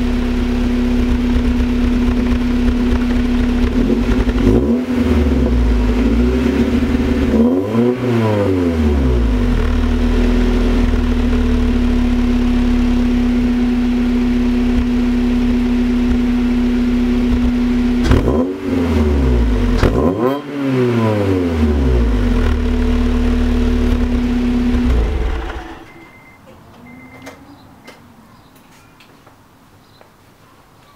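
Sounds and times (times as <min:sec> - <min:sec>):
car engine idling: 0:00.0 - 0:20.1, 0:21.5 - 0:26.1
engine revving: 0:00.0 - 0:26.0.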